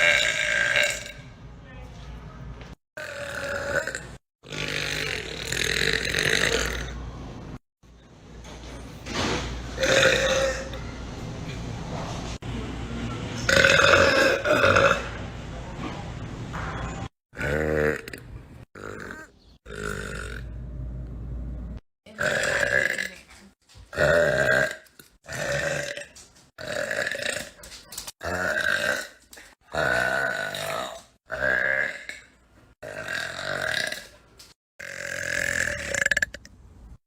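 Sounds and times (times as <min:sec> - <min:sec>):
woman burping: 0:09.8 - 0:10.8, 0:22.1 - 0:23.2.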